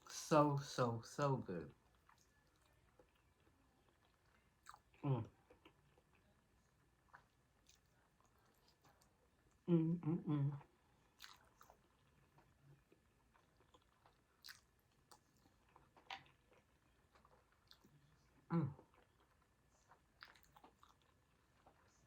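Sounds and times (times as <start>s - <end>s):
chewing and mouth sounds: 1.7s - 6.4s, 7.0s - 9.7s, 10.5s - 22.0s
person humming mm: 5.0s - 5.3s, 9.7s - 10.6s, 18.5s - 18.8s.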